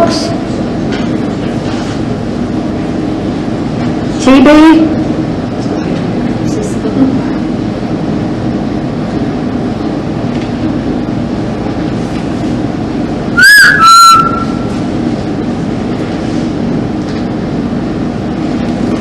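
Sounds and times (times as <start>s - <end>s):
background hum and hiss: 0.0s - 19.0s
loud whistle-like tones: 13.4s - 14.7s.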